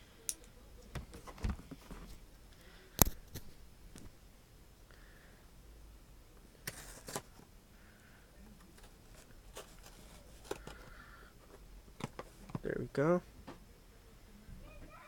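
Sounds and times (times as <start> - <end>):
cardboard scraping rustles: 8.8 - 10.8.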